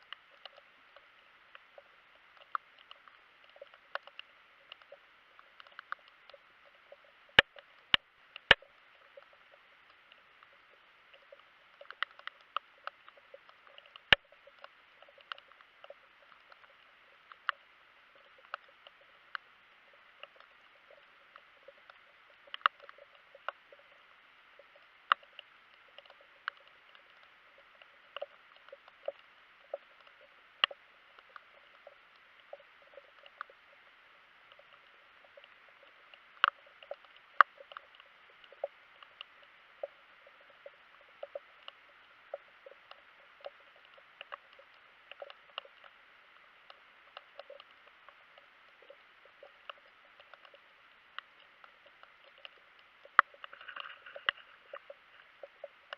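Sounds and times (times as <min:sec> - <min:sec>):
muffled underwater hiss: 0:00.0 - 0:55.9
underwater clicks and ticks: 0:00.0 - 0:55.9.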